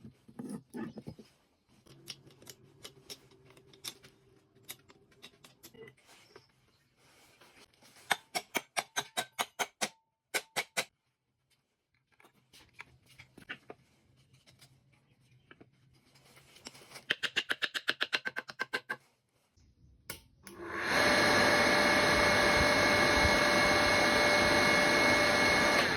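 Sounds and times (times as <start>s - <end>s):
small electric motor whining: 20.5s - 25.9s.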